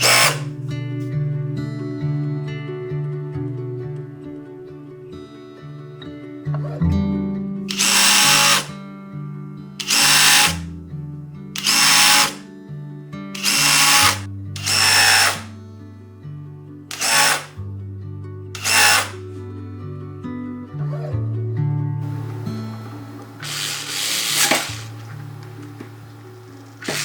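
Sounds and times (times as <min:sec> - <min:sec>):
power drill short bursts: 0:00.0 - 0:00.6, 0:07.7 - 0:08.8, 0:09.8 - 0:10.7, 0:11.6 - 0:12.4, 0:13.4 - 0:15.5, 0:16.9 - 0:17.6, 0:18.6 - 0:19.2, 0:23.4 - 0:25.0.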